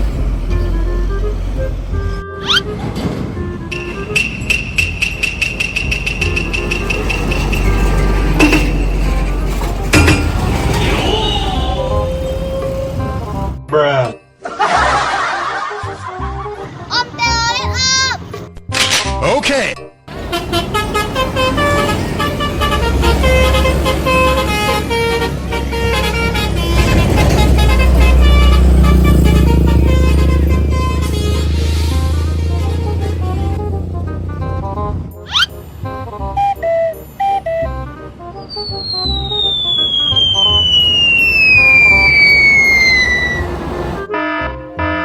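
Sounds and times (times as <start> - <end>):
vehicle engine drone: 0.0 - 13.6, 20.1 - 44.1
multi-tone bus horn jingle: 0.0 - 13.7, 20.1 - 38.9, 40.6 - 45.0
background music: 0.0 - 45.0
descending whistle: 0.5 - 2.8, 3.7 - 13.4, 35.3 - 35.6, 36.4 - 44.1
beeping tone: 3.7 - 8.7, 38.4 - 43.6.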